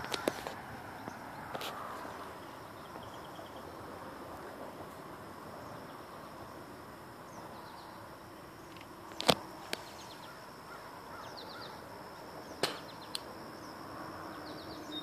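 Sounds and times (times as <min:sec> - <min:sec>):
high insect tone: 0:00.0 - 0:15.0
steady background hiss: 0:00.0 - 0:15.0.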